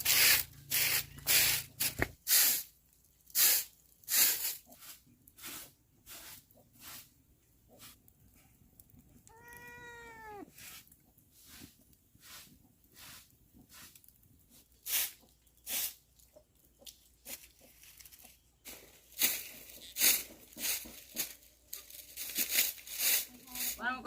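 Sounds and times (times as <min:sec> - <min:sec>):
cat meowing: 0:09.2 - 0:10.5.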